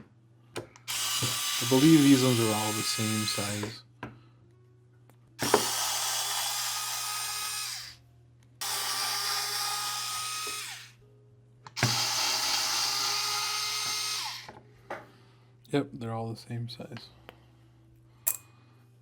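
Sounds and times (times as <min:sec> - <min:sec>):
electric screwdriver running: 0:00.9 - 0:03.8, 0:05.4 - 0:08.0, 0:08.6 - 0:10.9, 0:11.8 - 0:14.5.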